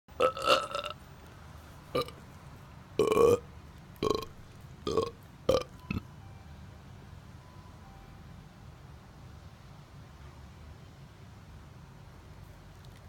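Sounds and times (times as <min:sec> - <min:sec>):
short burps: 0:00.2 - 0:01.0, 0:02.0 - 0:02.2, 0:03.0 - 0:03.4, 0:04.0 - 0:04.3.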